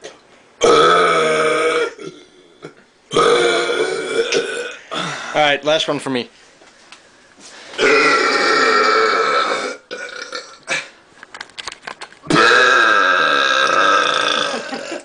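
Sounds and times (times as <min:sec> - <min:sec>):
loud forced belches: 0:00.6 - 0:04.8, 0:07.8 - 0:10.9, 0:12.3 - 0:15.0.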